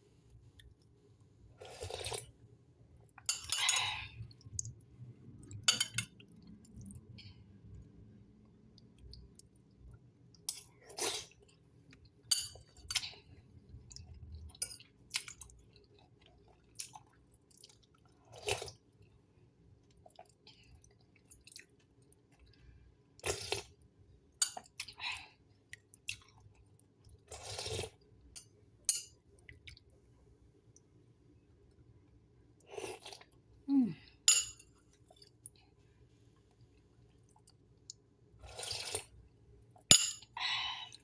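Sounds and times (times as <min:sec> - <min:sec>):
person sipping soup: 0:01.6 - 0:02.3, 0:10.6 - 0:11.4, 0:27.3 - 0:28.0, 0:32.6 - 0:34.2, 0:37.9 - 0:39.2.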